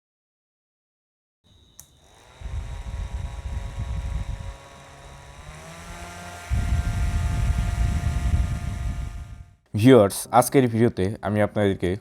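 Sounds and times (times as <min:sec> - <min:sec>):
fan motor whine: 0:01.5 - 0:09.6
switch click: 0:01.8 - 0:02.0
low rumble of airflow: 0:02.3 - 0:09.6.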